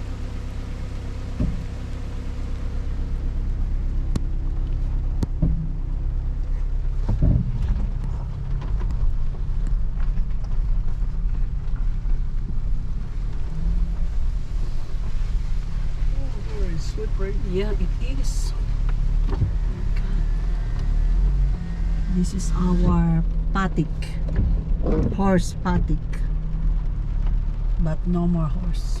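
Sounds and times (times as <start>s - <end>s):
car engine and road rumble: 0.0s - 29.0s
knocks and rattles: 5.1s - 6.1s, 6.8s - 12.7s.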